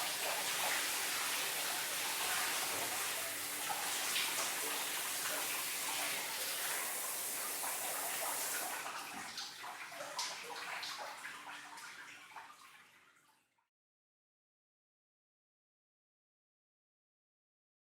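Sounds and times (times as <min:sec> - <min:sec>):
shower spray running: 0:00.0 - 0:09.1
water drips and splashes: 0:00.0 - 0:13.6.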